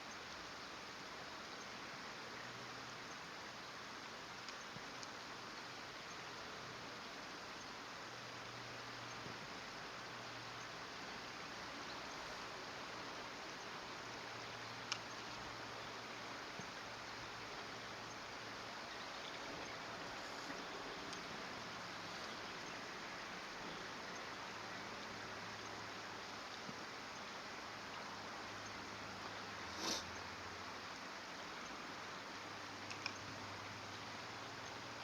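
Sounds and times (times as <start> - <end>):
stream water rushing: 9.8 - 35.0.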